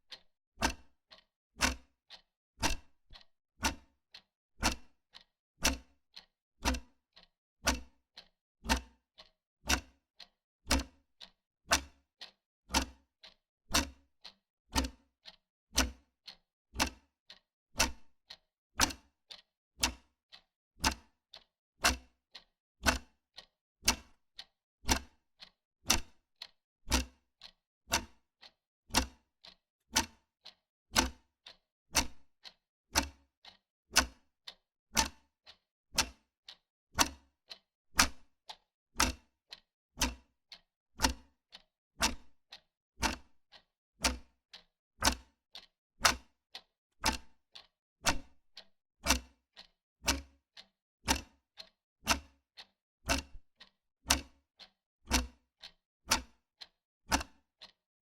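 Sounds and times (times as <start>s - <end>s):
wall clock ticking: 22.9s - 24.1s, 29.0s - 34.2s, 35.0s - 36.2s, 37.0s - 39.3s, 41.0s - 42.4s, 43.0s - 44.2s, 45.0s - 46.2s, 47.6s - 49.7s, 50.6s - 54.7s.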